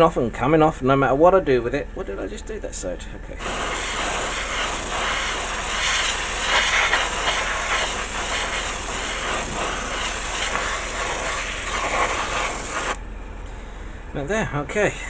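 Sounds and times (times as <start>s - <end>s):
airbrush hissing: 3.4s - 13.0s.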